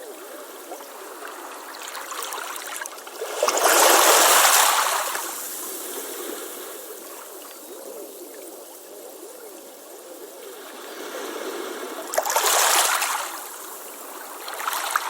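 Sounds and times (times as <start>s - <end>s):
water lapping and trickling: 0.1s - 7.6s, 10.6s - 15.0s.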